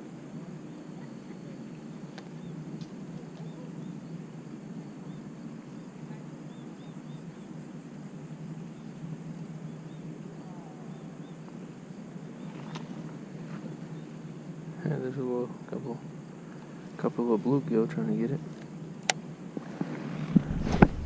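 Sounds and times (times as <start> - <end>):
small birds chirping: 0.6 - 19.4
low rumble: 20.3 - 21.0.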